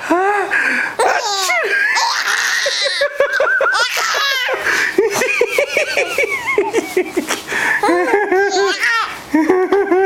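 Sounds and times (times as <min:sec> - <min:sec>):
breathy gasps: 0:00.0 - 0:01.0
child laughing: 0:01.0 - 0:10.0.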